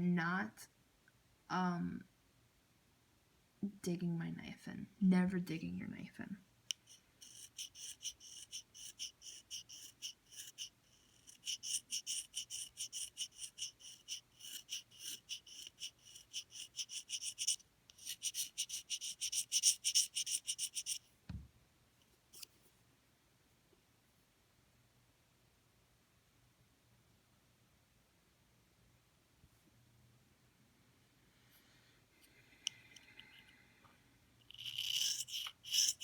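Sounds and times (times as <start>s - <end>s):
knife scraping reed cane: 6.7s - 21.0s, 34.5s - 36.0s.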